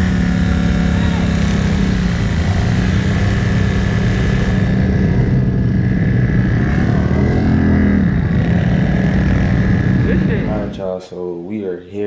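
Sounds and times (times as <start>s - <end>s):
off-road vehicle engine running: 0.0s - 11.0s.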